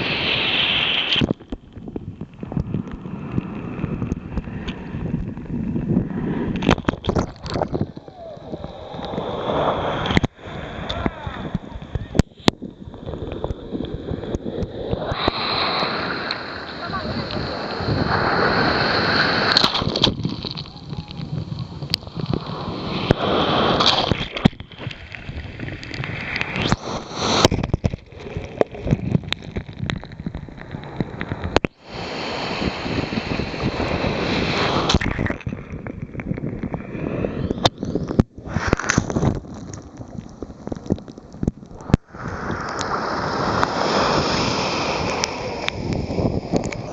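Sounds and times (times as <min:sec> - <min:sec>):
sea water sloshing and splashing: 0:12.3 - 0:36.8
sharp water splats: 0:15.0 - 0:21.3.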